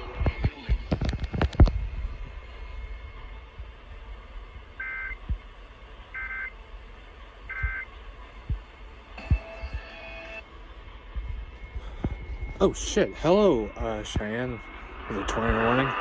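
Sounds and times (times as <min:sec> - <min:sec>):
steady low hum: 0:00.0 - 0:16.0
soft low thumps: 0:11.1 - 0:12.6.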